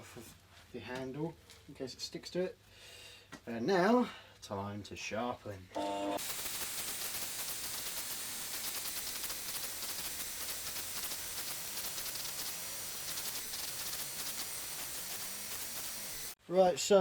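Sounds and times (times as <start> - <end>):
grinder hissing on steel: 5.8 - 16.4.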